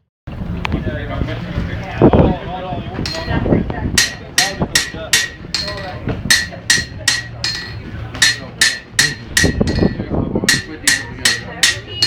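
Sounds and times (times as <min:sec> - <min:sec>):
hammer striking metal: 0:03.0 - 0:03.4, 0:04.0 - 0:12.0.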